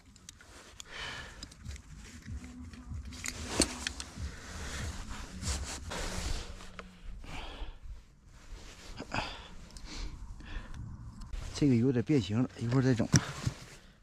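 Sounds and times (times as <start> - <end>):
tools and metal parts scraping: 0.0 - 4.9.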